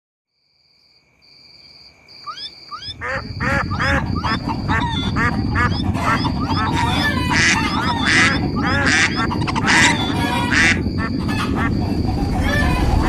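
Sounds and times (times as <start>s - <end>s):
high trill and chirps: 2.3s - 12.0s
honking and quacking bird calls: 2.3s - 13.0s
running herd rumble: 3.0s - 13.0s.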